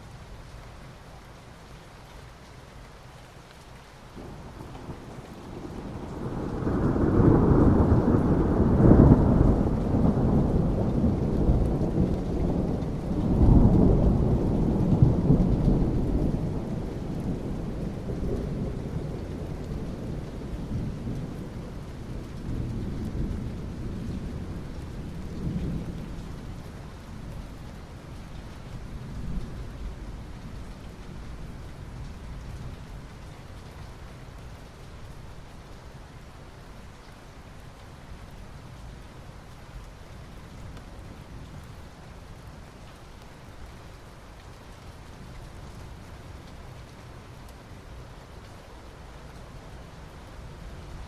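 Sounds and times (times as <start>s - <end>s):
soft rain on asphalt: 0.0s - 51.0s
rolling thunder: 4.2s - 26.6s.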